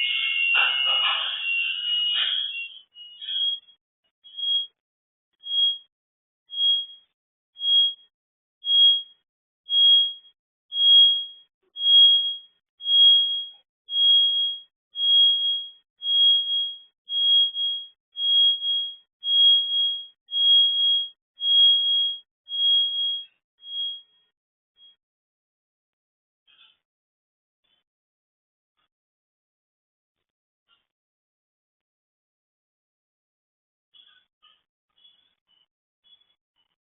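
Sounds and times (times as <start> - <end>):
high-pitched electronic alarm beeping: 0.0 - 4.8, 5.4 - 5.9, 6.5 - 25.0.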